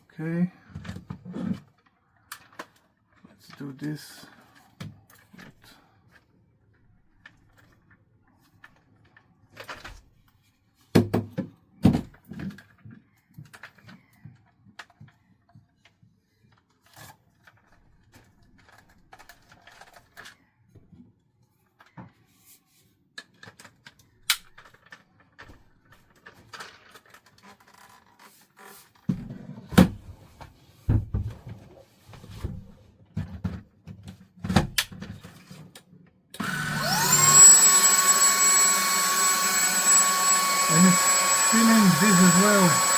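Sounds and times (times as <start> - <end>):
plastic clicks and rustles: 12.3 - 20.4, 23.2 - 28.6.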